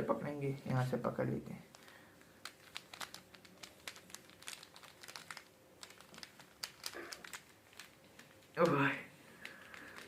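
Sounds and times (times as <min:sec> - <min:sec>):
puzzle cube clicking: 0:01.7 - 0:08.8.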